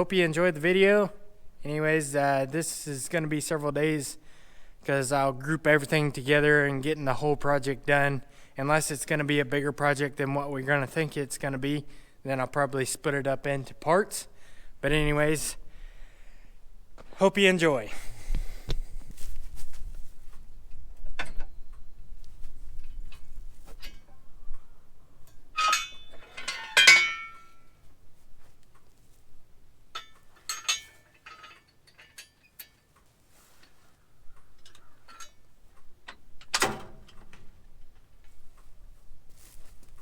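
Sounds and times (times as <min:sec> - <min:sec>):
metallic clinks: 0:25.3 - 0:27.8, 0:29.9 - 0:33.0.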